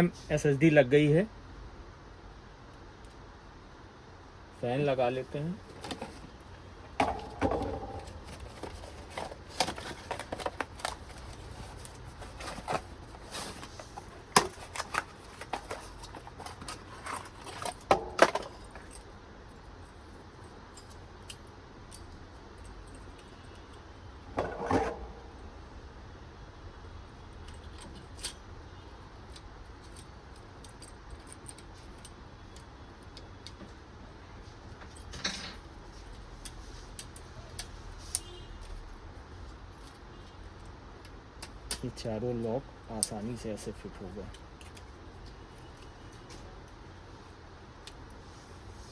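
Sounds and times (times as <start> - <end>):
plastic and metal parts clicking: 7.0 - 19.0.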